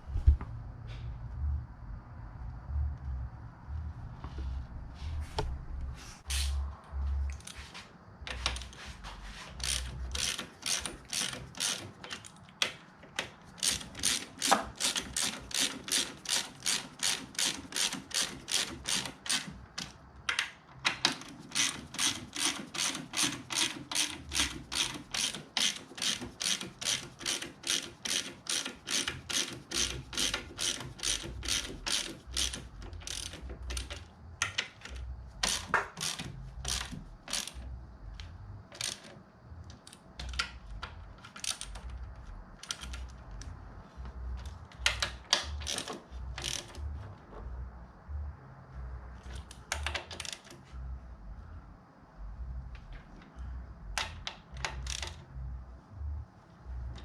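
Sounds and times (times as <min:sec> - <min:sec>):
ratchet wrench clicking: 0:09.6 - 0:37.7, 0:38.7 - 0:39.2, 0:41.2 - 0:42.0, 0:42.6 - 0:43.5, 0:44.4 - 0:46.9, 0:49.3 - 0:50.6, 0:54.0 - 0:55.2.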